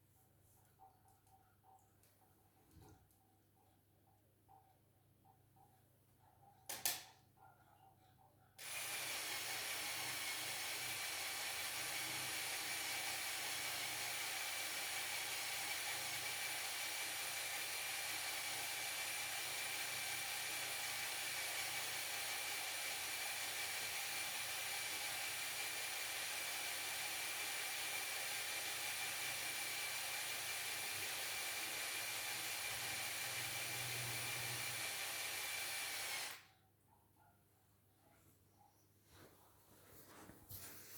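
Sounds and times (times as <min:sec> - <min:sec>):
small electric motor whining: 0:08.6 - 0:36.5.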